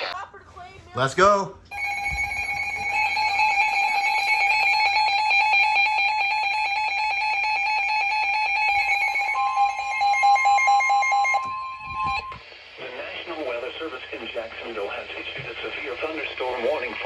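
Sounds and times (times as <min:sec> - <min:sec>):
steady warning alarm tone: 0:01.7 - 0:12.4.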